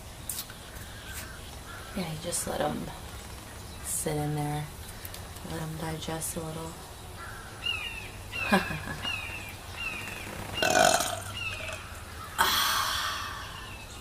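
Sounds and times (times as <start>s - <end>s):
bird chirping: 0.3s - 12.4s
woman burping: 10.6s - 11.3s, 12.4s - 13.0s.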